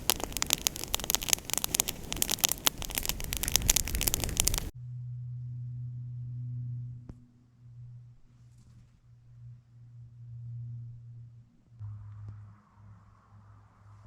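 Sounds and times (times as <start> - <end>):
sharp tick: 0.0 - 4.7
wood fire crackling: 0.0 - 4.7
low hum: 0.0 - 14.0.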